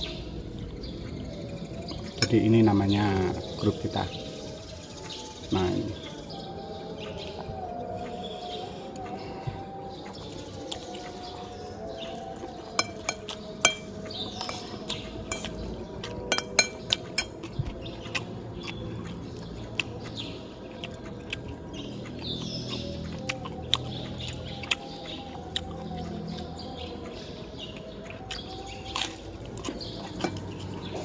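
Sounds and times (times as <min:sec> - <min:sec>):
birds chirping: 0:00.0 - 0:31.0
cutlery clinking on plates: 0:12.8 - 0:14.6, 0:15.3 - 0:15.6, 0:16.3 - 0:17.4.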